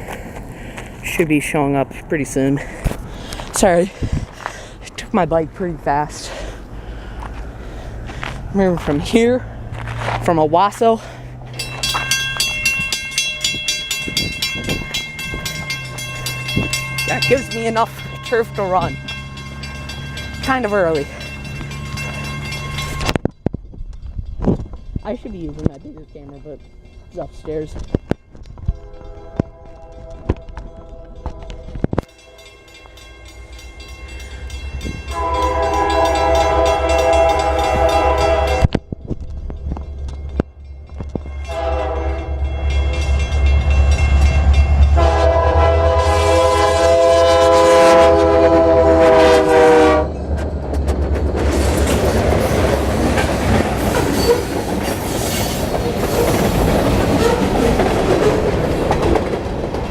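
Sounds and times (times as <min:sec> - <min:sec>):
diesel locomotive engine rumble: 0:00.0 - 0:59.9
rapid evenly spaced ringing: 0:11.5 - 0:23.1, 0:32.1 - 0:38.3
train horn long steady chord: 0:28.7 - 0:32.8, 0:35.1 - 0:38.8, 0:41.4 - 0:43.2, 0:44.2 - 0:50.2.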